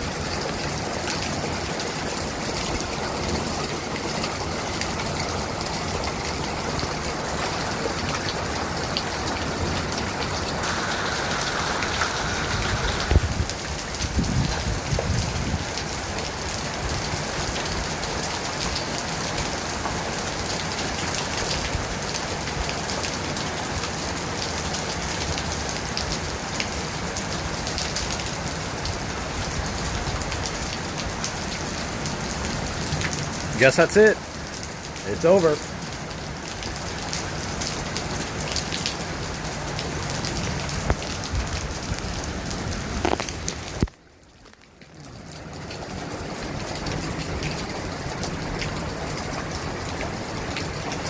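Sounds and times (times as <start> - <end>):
heavy rain spattering: 0.0 - 51.0
thunder crack and rumble: 10.7 - 15.6.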